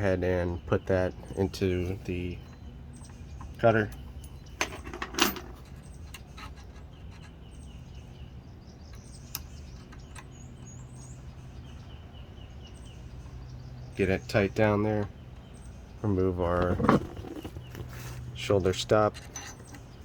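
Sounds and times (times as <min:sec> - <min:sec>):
metal clicks and knock: 0:03.4 - 0:07.3
faint bird chirps: 0:05.6 - 0:18.7.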